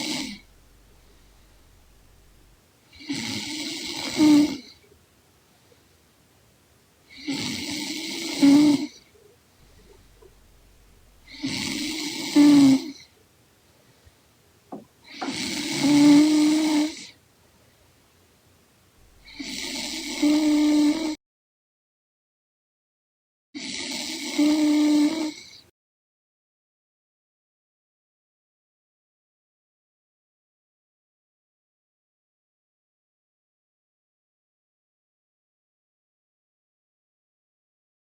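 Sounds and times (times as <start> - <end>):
woman snoring: 0.0 - 4.8, 7.1 - 13.1, 15.0 - 17.2, 19.2 - 21.2, 23.6 - 25.6.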